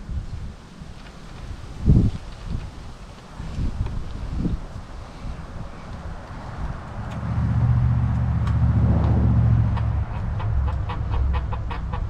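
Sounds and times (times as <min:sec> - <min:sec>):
low mechanical hum: 0:01.0 - 0:12.0
chicken clucking: 0:09.7 - 0:12.0.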